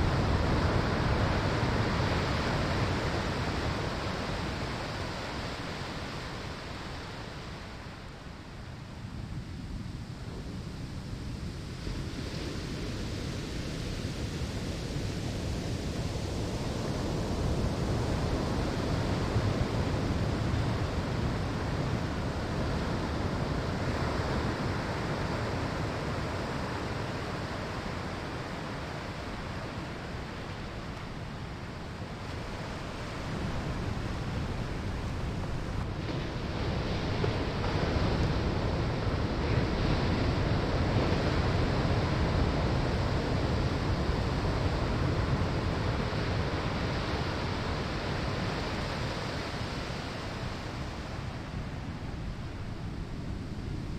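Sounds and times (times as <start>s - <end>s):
surf breaking on sandy shore: 11.3s - 53.9s.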